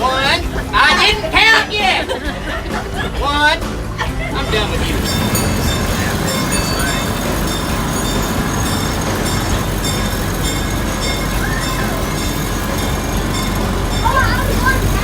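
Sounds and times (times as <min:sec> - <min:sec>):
railcar rumbling on track: 0:03.6 - 0:15.0.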